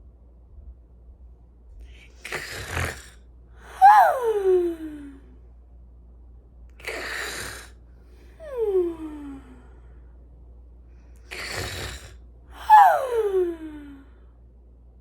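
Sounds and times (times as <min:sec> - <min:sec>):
person snoring: 0:02.1 - 0:03.2, 0:06.8 - 0:07.8, 0:11.3 - 0:14.0.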